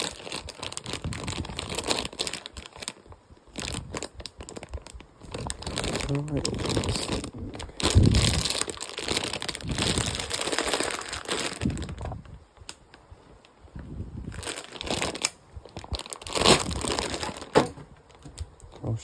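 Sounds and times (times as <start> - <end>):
plastic packaging crinkling: 0.0 - 13.6, 14.2 - 18.9.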